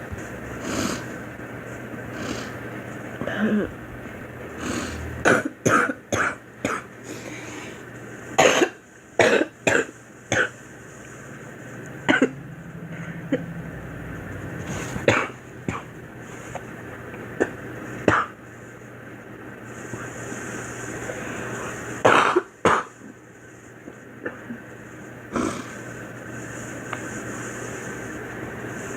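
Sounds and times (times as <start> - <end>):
girl coughing: 3.2 - 3.8, 5.2 - 6.9, 8.4 - 10.5, 12.1 - 12.4, 15.0 - 15.9, 22.0 - 22.9.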